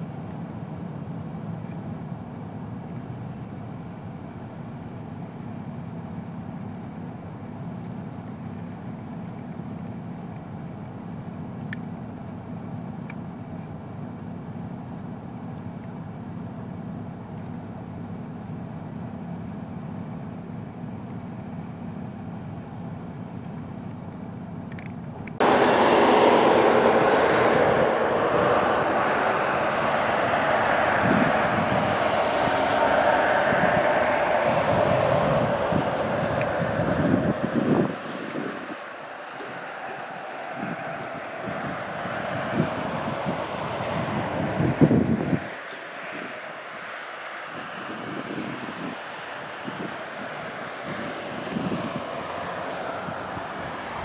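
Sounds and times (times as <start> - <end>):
low rumbling noise: 25.3 - 54.0
loud rushing noise: 25.4 - 54.0.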